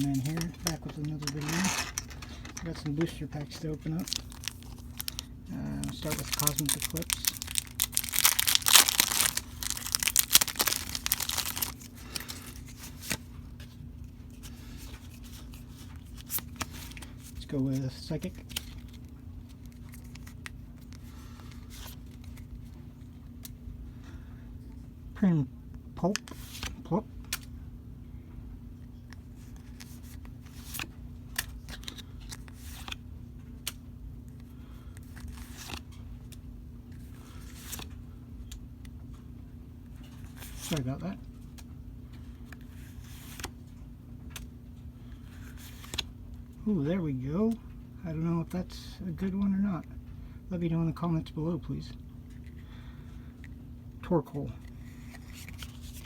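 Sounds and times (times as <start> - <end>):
quiet rustling and handling: 0.0 - 25.0, 28.2 - 50.2, 51.7 - 56.0
steady low hum: 0.0 - 56.0
foil wrapper tearing and crinkling: 3.9 - 13.2.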